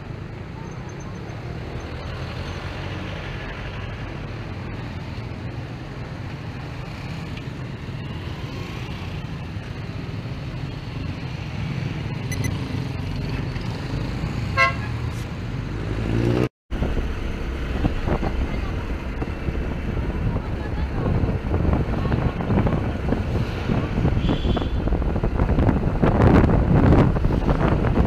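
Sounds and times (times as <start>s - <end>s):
vehicle rumbling in traffic: 0.0s - 28.0s
car horn toot: 14.6s - 14.9s, 24.2s - 24.9s.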